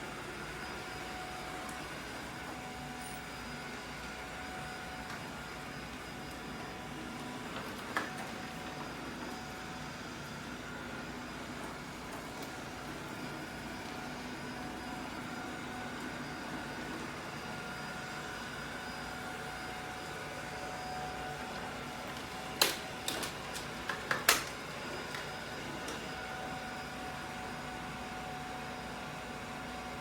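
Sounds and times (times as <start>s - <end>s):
robot vacuum whirring hum: 0.0s - 30.0s.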